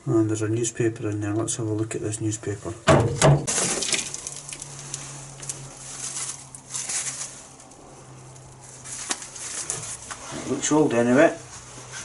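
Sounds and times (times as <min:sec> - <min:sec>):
newspaper rustling and crackling: 0:03.5 - 0:10.6.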